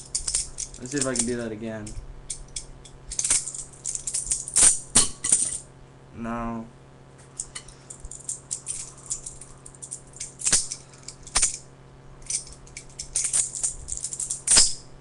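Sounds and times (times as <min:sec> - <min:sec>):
butterfly knife clicking and rattling: 0:00.0 - 0:05.6, 0:07.4 - 0:11.6, 0:12.2 - 0:14.8
knife handles clacking together: 0:00.0 - 0:05.6, 0:12.2 - 0:14.8.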